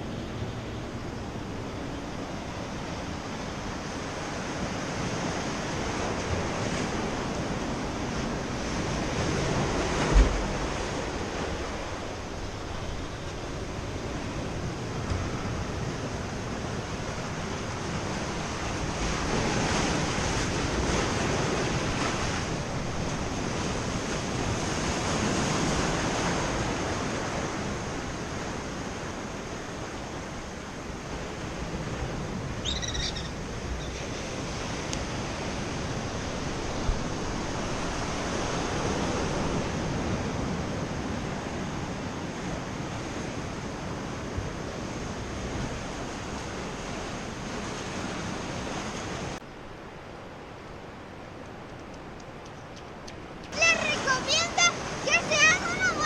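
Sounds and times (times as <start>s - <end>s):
ocean surf breaking: 0.0s - 56.0s.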